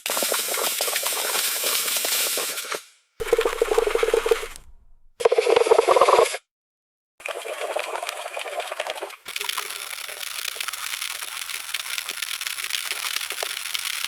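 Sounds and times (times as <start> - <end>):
water pouring and splashing: 3.2 - 5.1, 7.2 - 14.0.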